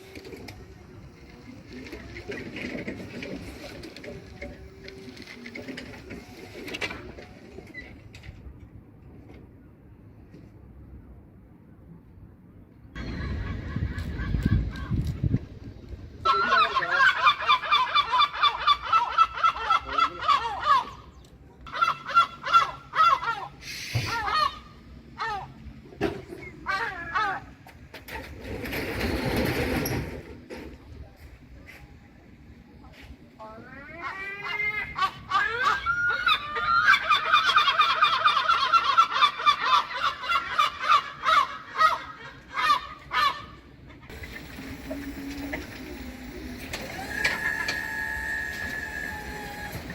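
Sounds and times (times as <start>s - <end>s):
herring gull laughing call: 16.2s - 25.6s, 26.4s - 27.6s, 33.6s - 44.2s, 46.8s - 49.9s.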